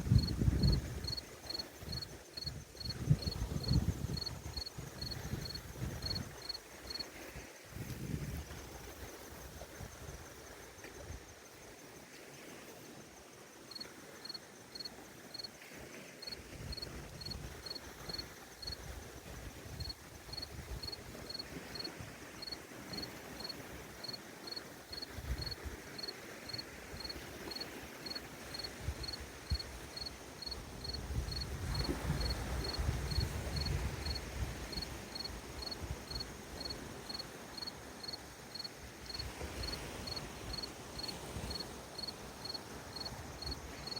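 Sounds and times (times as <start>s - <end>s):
cricket chirping: 0.0s - 43.9s
gentle lake waves: 0.0s - 43.9s.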